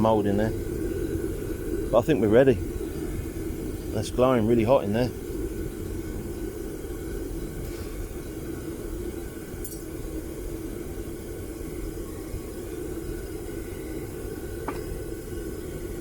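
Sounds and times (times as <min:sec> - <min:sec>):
propane burner running: 0:00.0 - 0:16.0
light clink: 0:09.6 - 0:09.9.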